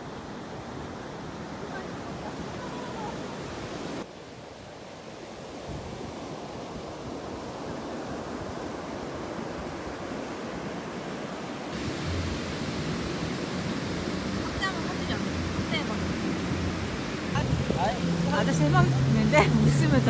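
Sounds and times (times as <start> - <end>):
sea surf washing in: 0.0 - 4.1, 5.1 - 20.0.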